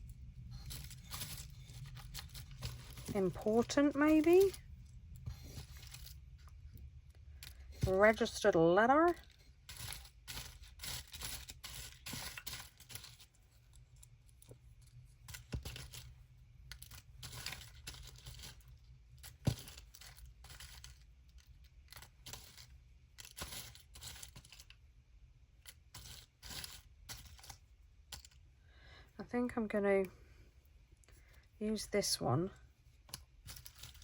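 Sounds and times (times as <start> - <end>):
paper rustling: 0.0 - 6.2, 7.4 - 13.7, 33.2 - 34.0.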